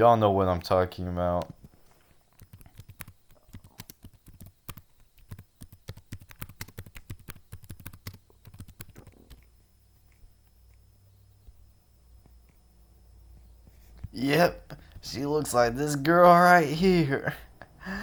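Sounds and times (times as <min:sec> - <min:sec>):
computer keyboard typing: 0:02.3 - 0:09.5.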